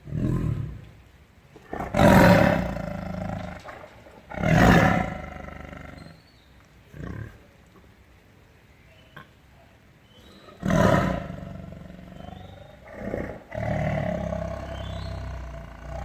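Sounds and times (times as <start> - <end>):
tiger roaring: 0.0 - 1.0, 1.6 - 6.2, 6.9 - 7.5, 10.5 - 16.0.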